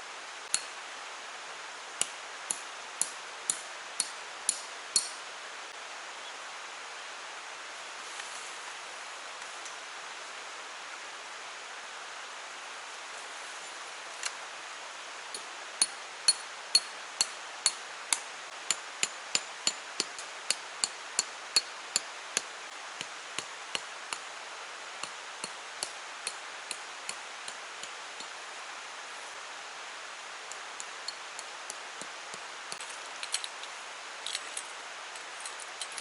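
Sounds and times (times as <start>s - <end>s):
hammer striking metal: 3.0s - 5.2s
stream water rushing: 8.6s - 36.0s.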